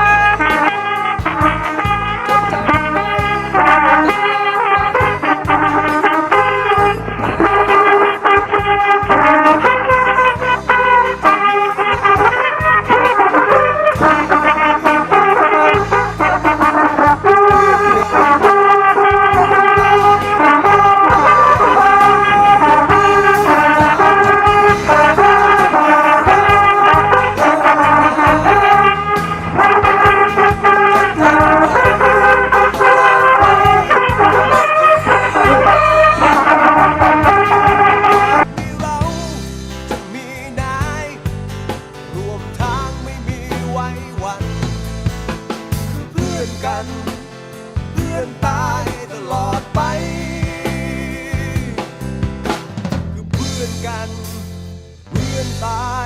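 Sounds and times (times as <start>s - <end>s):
brass playing held notes: 0.0s - 39.5s
band accompaniment: 0.0s - 56.0s.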